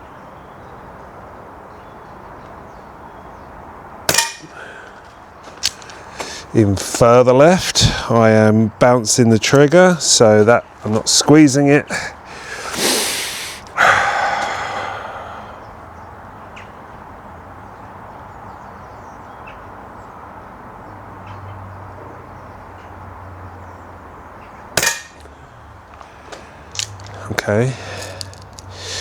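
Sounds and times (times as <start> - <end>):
air pistol shot: 4.1 - 4.5, 24.8 - 25.2.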